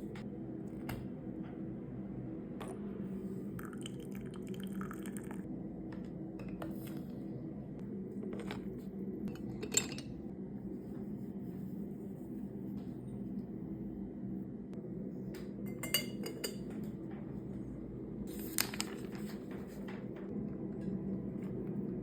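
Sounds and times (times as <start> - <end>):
steady low hum: 0.0 - 22.0
tea being poured: 3.6 - 5.5
tea ware clinking: 9.3 - 10.2, 15.7 - 16.7.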